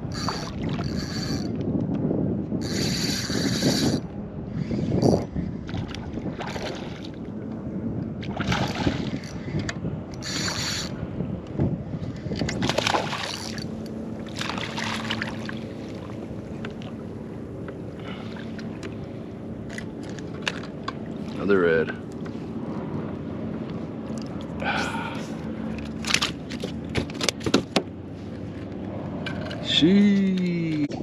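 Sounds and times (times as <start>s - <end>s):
wind on microphone: 0.0s - 13.8s.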